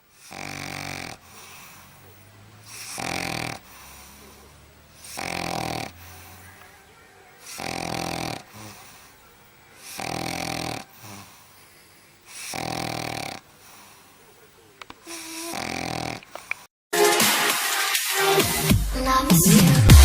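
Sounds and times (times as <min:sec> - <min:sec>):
dog snoring: 0:00.0 - 0:11.7, 0:12.3 - 0:14.4, 0:15.0 - 0:16.7
dog breathing quietly: 0:00.0 - 0:12.8, 0:13.5 - 0:15.7.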